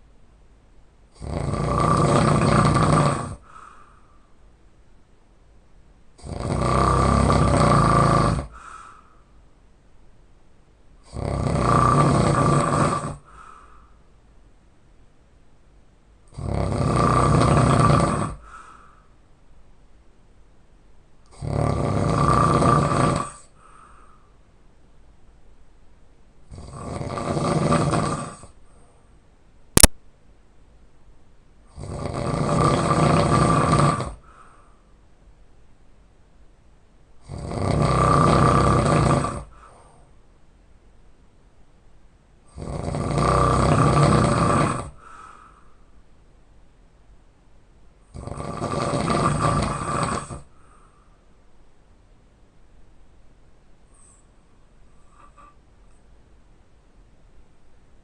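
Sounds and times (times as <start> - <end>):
man snoring loudly: 1.1 - 3.5, 6.2 - 8.7, 11.0 - 13.3, 16.3 - 18.5, 21.3 - 23.5, 26.5 - 28.6, 31.7 - 34.2, 37.2 - 39.8, 42.5 - 45.2, 48.1 - 50.5
short soft breath: 3.4 - 4.4, 8.5 - 9.4, 13.2 - 14.1, 18.4 - 19.2, 23.6 - 24.4, 34.2 - 35.0, 45.0 - 46.0, 50.5 - 51.4
sharp click: 29.8 - 30.0.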